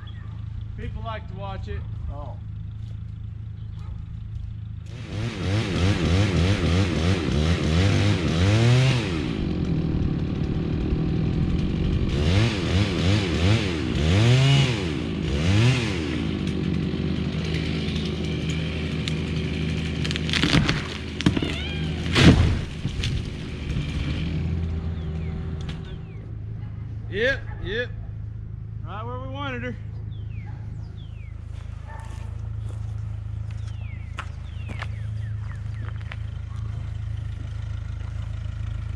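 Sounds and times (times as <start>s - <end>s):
chainsaw revving and cutting: 4.9s - 25.7s
wood cracking: 17.4s - 26.0s
heavy thud of falling trunk: 20.4s - 23.9s.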